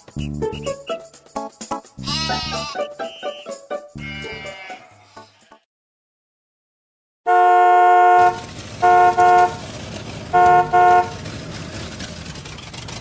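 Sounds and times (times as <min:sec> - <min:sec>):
vehicle horn honking: 0:07.3 - 0:09.6, 0:10.2 - 0:11.2
low engine rumble: 0:08.2 - 0:13.0.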